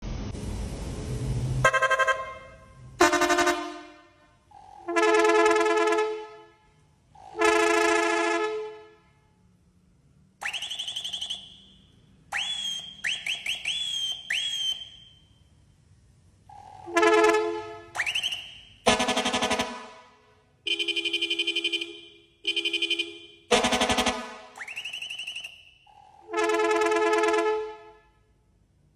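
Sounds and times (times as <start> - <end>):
multi-tone horn blasts: 1.6 - 9.4, 16.9 - 25.6, 26.2 - 28.4
rising whistling horn: 10.4 - 15.4, 16.9 - 19.6, 23.5 - 27.2
short rising chirps: 10.4 - 15.6, 17.9 - 18.9, 24.6 - 26.3.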